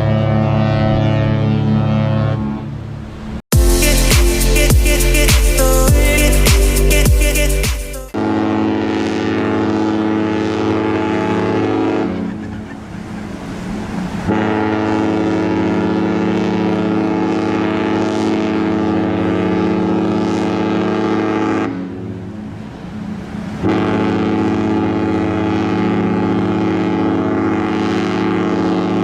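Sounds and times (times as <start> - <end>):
ship horn blasts: 0.0 - 29.0.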